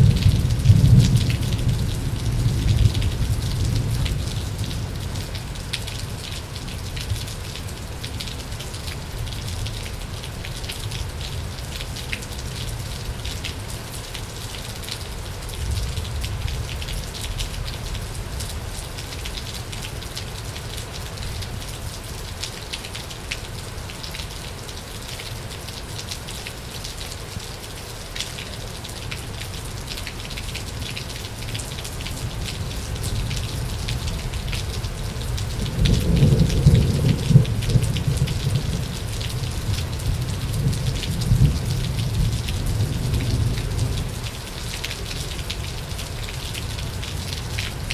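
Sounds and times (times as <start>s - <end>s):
low thunder rumble: 0.0s - 5.7s, 32.6s - 44.2s
heavy rain falling: 0.0s - 47.9s.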